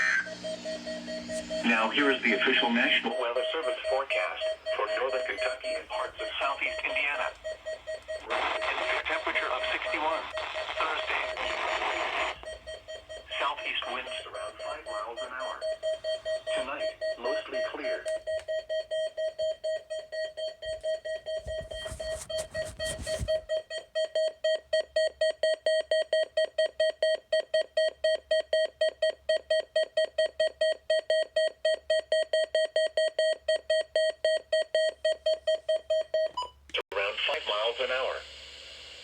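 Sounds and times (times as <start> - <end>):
rapid electronic alert beeps: 0.0 - 36.1.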